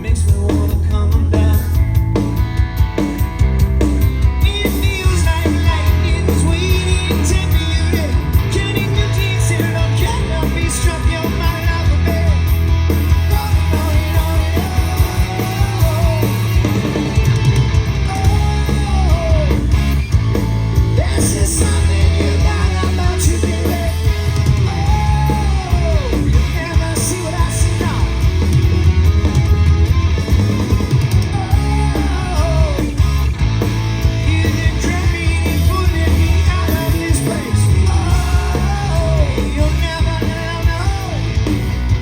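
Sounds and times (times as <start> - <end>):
live rock band playing: 0.0 - 42.0
person singing: 4.4 - 12.5, 13.2 - 16.6, 18.0 - 19.7, 20.9 - 28.2, 31.2 - 33.0, 34.2 - 41.4.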